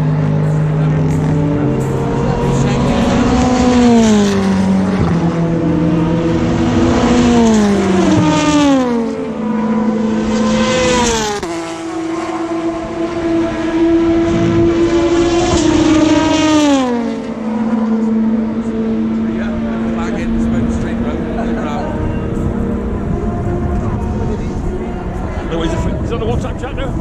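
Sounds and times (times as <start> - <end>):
race cars passing at speed: 0.0 - 27.0.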